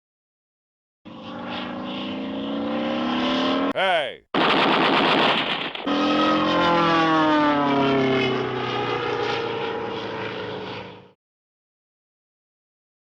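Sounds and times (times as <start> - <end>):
cartoon engine-like tone gliding down: 5.9 - 11.1.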